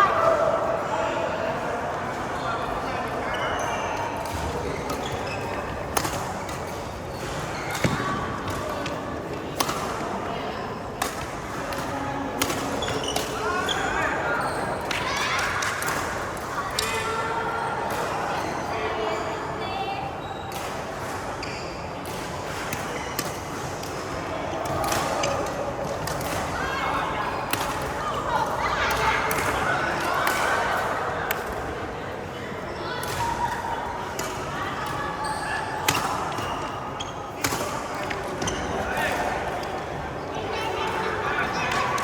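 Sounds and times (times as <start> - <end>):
shoes squeaking on court floor: 3.3 - 8.2, 12.6 - 15.0
rackets hitting shuttlecock: 4.2 - 10.1.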